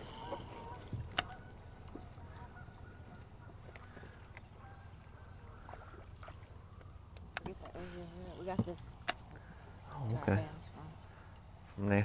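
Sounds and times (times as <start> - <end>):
geese honking faintly: 0.0 - 7.1.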